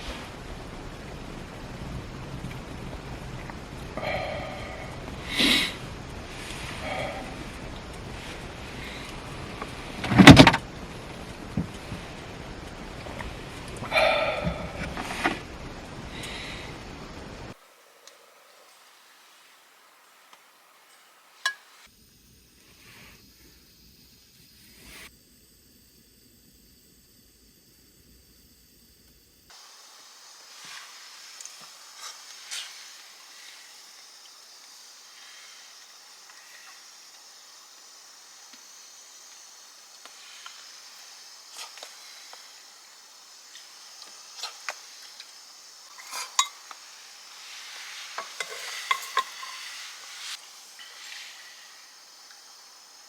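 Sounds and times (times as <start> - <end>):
food sizzling in a pan: 0.0 - 22.1, 29.5 - 53.0
utensil clinking against pan: 48.2 - 49.8.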